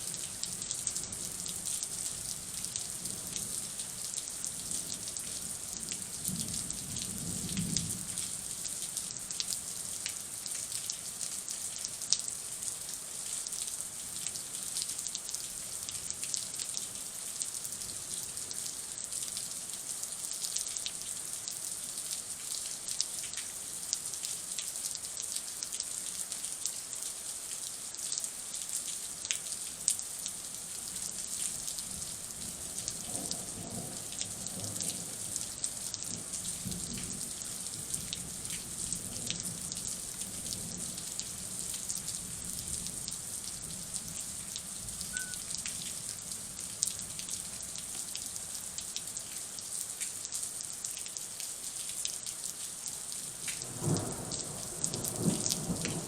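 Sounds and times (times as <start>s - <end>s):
rain drops tapping: 44.9s - 48.2s, 53.4s - 56.0s.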